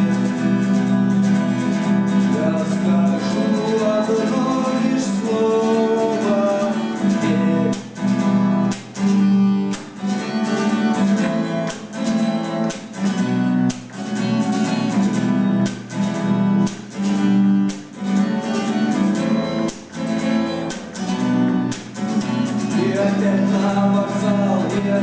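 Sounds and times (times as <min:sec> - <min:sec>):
acoustic guitar strumming chords: 0:00.0 - 0:25.0.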